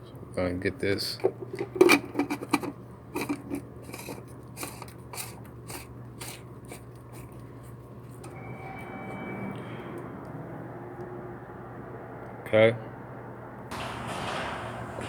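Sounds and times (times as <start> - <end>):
steady low hum: 0.0 - 15.0
tools clicking and scraping: 1.2 - 7.5.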